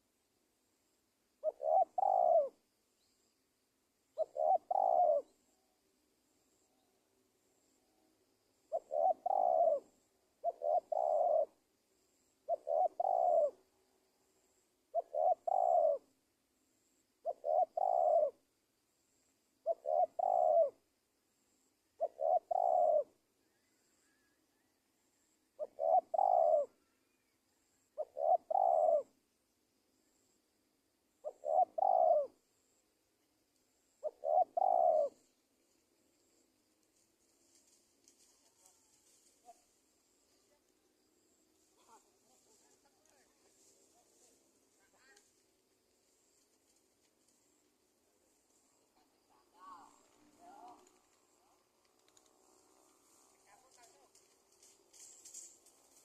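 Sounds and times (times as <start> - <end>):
dove cooing: 1.4 - 2.6, 4.1 - 5.4, 8.7 - 11.7, 12.4 - 13.7, 14.9 - 16.2, 17.2 - 18.5, 19.6 - 20.9, 22.0 - 23.2, 25.6 - 27.1, 27.8 - 29.2, 31.2 - 32.4, 33.9 - 35.4, 38.3 - 44.4, 48.4 - 56.0.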